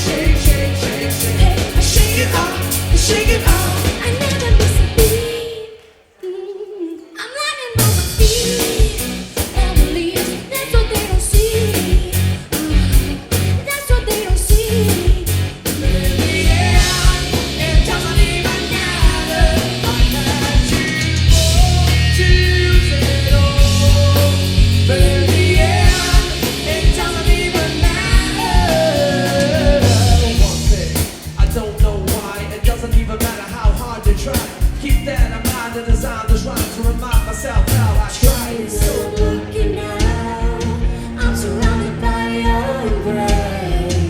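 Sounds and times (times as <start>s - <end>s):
steady drum beat: 0.0s - 5.4s, 7.8s - 44.0s
live rock band playing: 0.0s - 5.6s, 7.7s - 44.0s
person singing: 0.0s - 44.0s.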